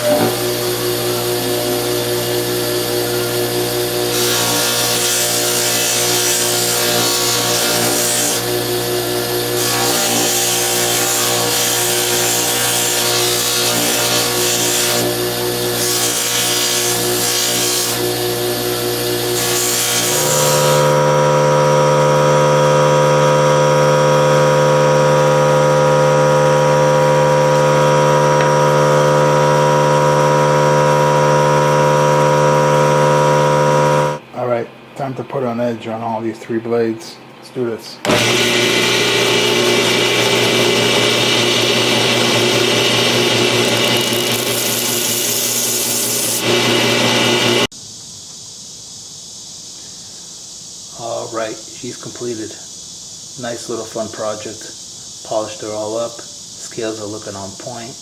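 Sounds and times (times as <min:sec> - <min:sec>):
grinding wheel humming: 0:00.0 - 0:34.2, 0:38.0 - 0:47.7
high machine hum: 0:00.0 - 0:35.2, 0:36.9 - 0:47.7
steel grinding on wheel: 0:38.1 - 0:47.7.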